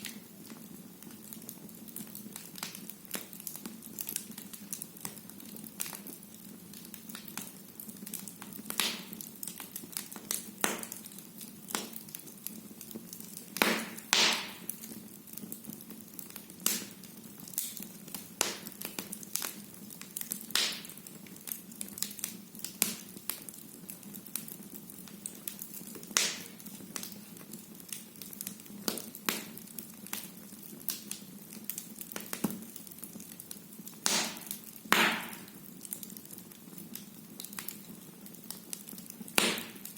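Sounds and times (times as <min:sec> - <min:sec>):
fire crackling and popping: 0:00.0 - 0:39.9
low hiss of fire: 0:00.0 - 0:39.9.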